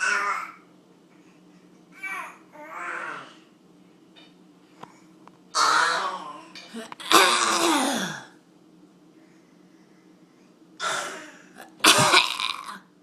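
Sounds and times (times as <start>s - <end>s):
harsh coughing: 10.8s - 12.8s.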